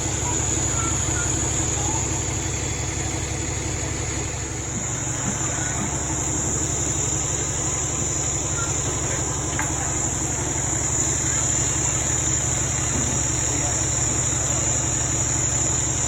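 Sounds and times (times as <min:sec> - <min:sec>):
vehicle engine idling: 0:00.0 - 0:16.0.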